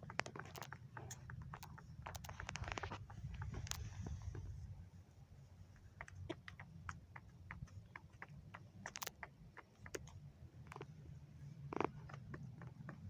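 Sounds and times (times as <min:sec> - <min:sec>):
chickens pecking taps: 0:05.8 - 0:11.0.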